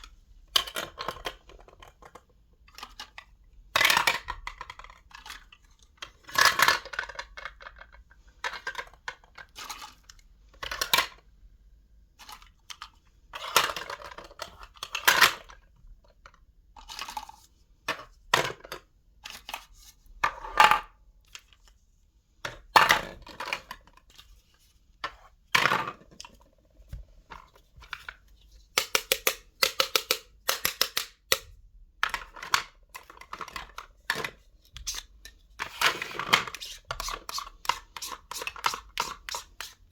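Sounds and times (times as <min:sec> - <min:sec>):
toys clicking and tapping: 0:28.7 - 0:31.6.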